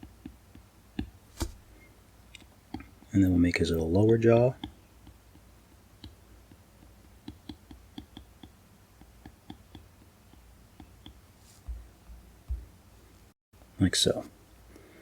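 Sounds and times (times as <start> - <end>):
stylus tapping on tablet screen: 0.0 - 1.7, 4.0 - 12.8
soft low thump: 11.6 - 12.7.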